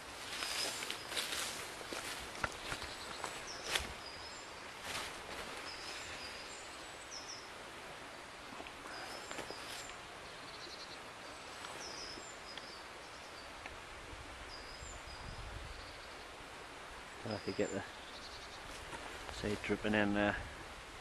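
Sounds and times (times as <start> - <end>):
small birds chirping: 0.0 - 7.6, 8.4 - 13.8, 17.1 - 20.3
steady outdoor hiss: 0.0 - 21.0.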